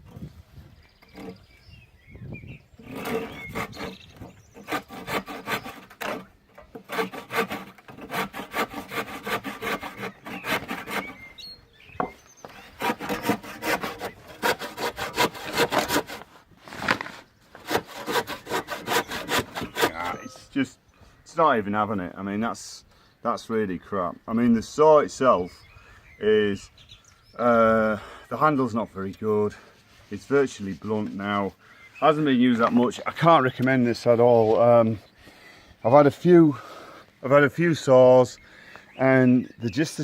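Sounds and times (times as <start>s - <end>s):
hand saw cutting wood: 2.8s - 11.4s, 12.4s - 20.4s.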